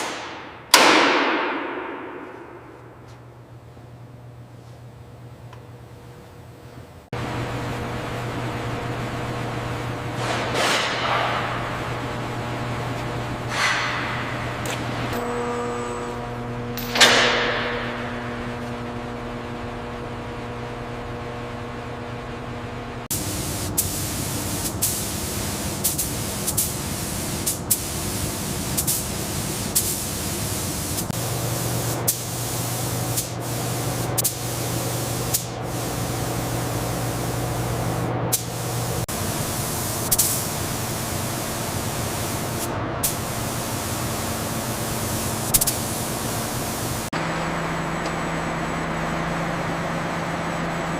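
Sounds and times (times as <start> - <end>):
steady machine hum: 0.0 - 50.9
loud hiss of spray: 23.1 - 47.1.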